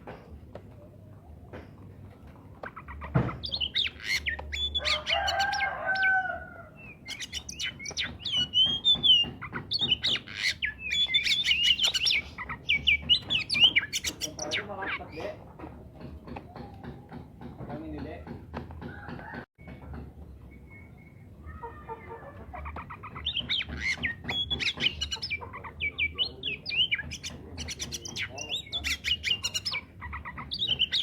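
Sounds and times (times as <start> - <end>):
bird singing whistles and chirps: 3.4 - 6.2, 6.8 - 15.1, 20.4 - 21.4.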